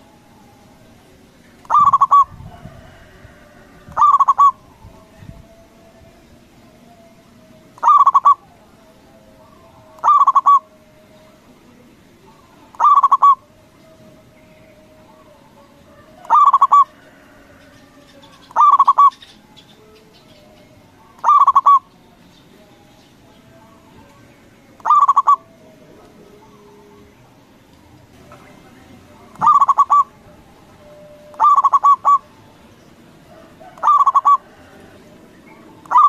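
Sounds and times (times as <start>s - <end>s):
dove cooing: 1.6s - 4.7s, 7.8s - 8.5s, 9.4s - 10.9s, 12.7s - 13.6s, 14.8s - 21.9s, 24.8s - 27.2s, 29.3s - 32.6s, 33.2s - 36.0s.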